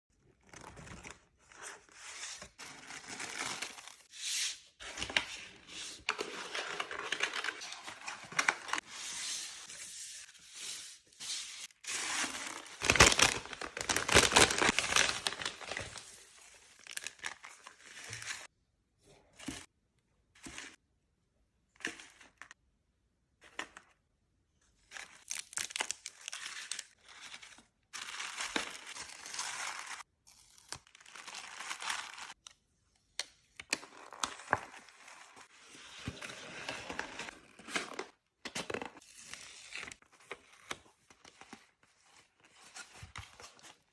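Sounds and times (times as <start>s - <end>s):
packaging crinkling: 12.0s - 18.4s.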